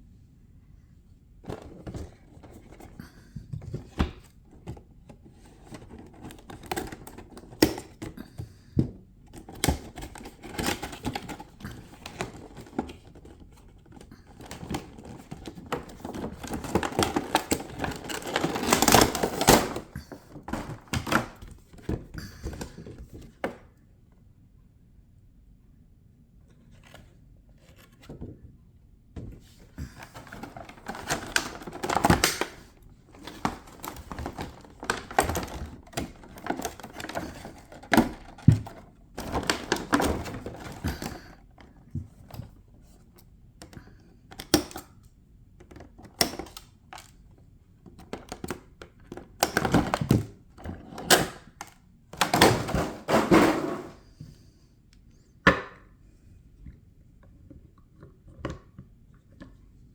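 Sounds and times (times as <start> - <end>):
packaging clicks and knocks: 3.6 - 23.6, 29.8 - 41.4, 47.9 - 54.0
packaging rustling: 9.4 - 21.6, 29.7 - 41.4.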